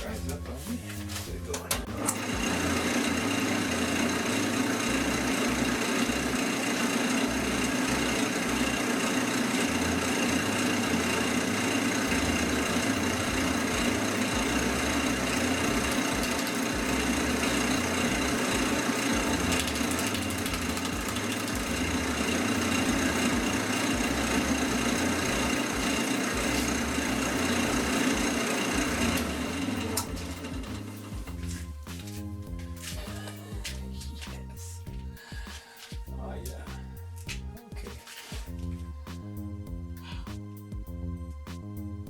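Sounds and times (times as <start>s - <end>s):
wood lathe motor hum and whine: 1.9s - 34.9s.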